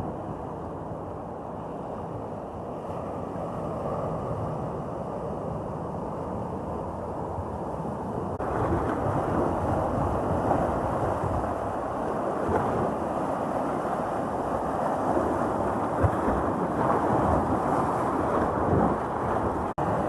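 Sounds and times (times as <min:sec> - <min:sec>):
wind buffeting microphone: 0:07.2 - 0:20.0
sea waves breaking on beach: 0:08.0 - 0:20.0.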